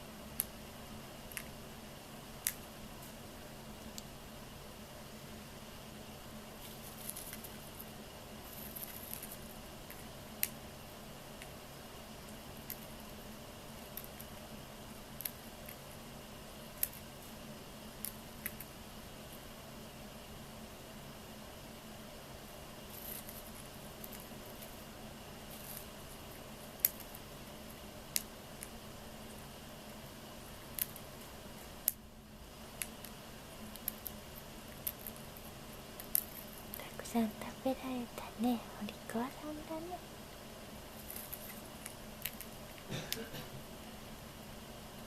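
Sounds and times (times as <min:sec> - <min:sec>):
bird husking seeds crackles and clicks: 0:01.2 - 0:01.6, 0:02.4 - 0:03.2, 0:03.8 - 0:04.2, 0:06.6 - 0:10.7, 0:11.4 - 0:16.0, 0:16.7 - 0:19.4, 0:22.8 - 0:32.0, 0:32.6 - 0:37.0, 0:40.8 - 0:43.2
seeds cracking clicks: 0:26.6 - 0:27.3, 0:32.7 - 0:36.9, 0:40.9 - 0:43.2.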